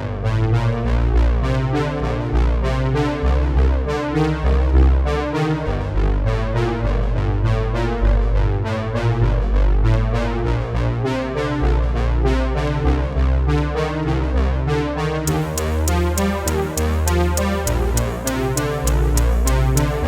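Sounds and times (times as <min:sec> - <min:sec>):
electronic music with synthesizer: 0:15.3 - 0:20.0.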